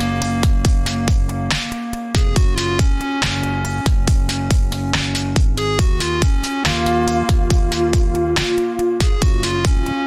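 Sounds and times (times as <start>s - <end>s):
kick drum beat: 0.0s - 1.6s, 2.2s - 3.2s, 3.9s - 6.6s, 7.3s - 8.3s, 9.0s - 10.0s
held synth chords: 0.0s - 10.0s
hi-hats: 0.0s - 10.0s.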